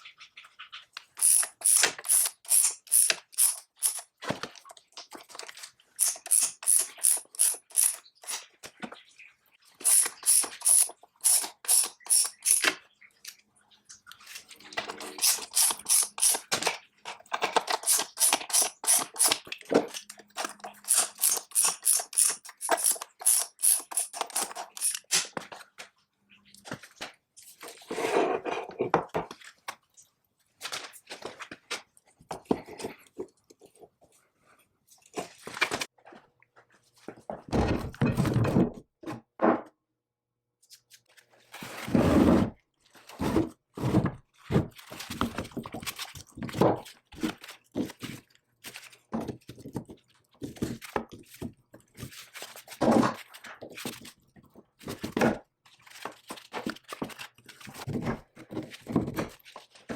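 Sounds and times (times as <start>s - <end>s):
hand tool scraping metal: 1.2s - 4.1s, 6.0s - 8.4s, 9.8s - 12.7s, 15.0s - 16.5s, 17.6s - 19.4s, 20.4s - 25.1s.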